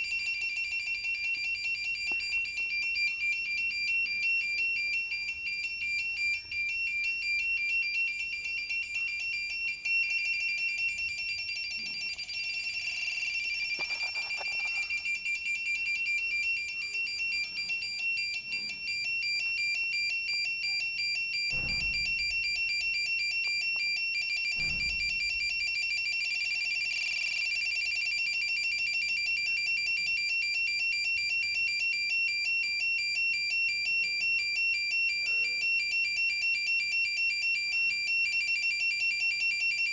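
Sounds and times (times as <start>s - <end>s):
pulsing electronic beep: 20.6s - 25.8s
low thuds: 21.5s - 22.7s, 24.6s - 25.5s.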